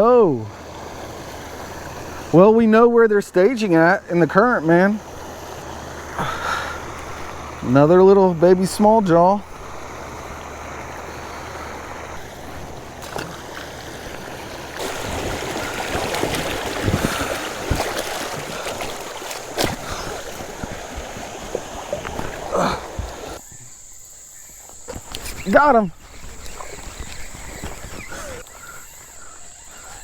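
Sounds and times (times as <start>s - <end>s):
flowing river water: 0.0s - 24.0s, 24.6s - 30.0s
sharp knocks on kayak: 13.0s - 13.7s, 14.8s - 23.4s.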